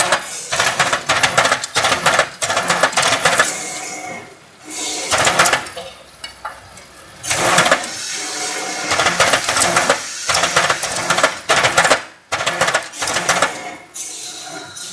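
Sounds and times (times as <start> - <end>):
machine clattering rattle: 0.0 - 3.6, 5.1 - 5.9, 7.2 - 8.0, 8.9 - 13.7.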